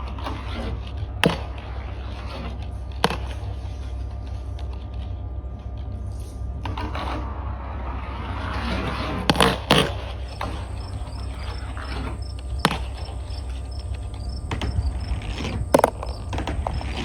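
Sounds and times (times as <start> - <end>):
steady low hum: 10.3 - 17.0.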